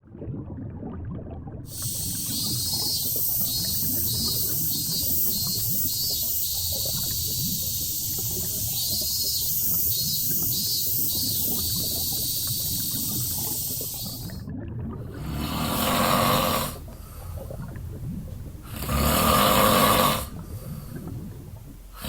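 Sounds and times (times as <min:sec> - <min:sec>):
cicadas chirring: 0:01.7 - 0:14.4, 0:18.5 - 0:20.8
low crackly rumble: 0:11.8 - 0:22.0.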